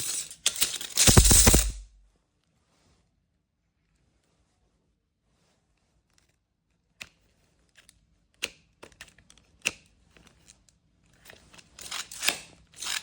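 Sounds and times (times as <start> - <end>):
hand tool clicks: 0.6 - 1.8.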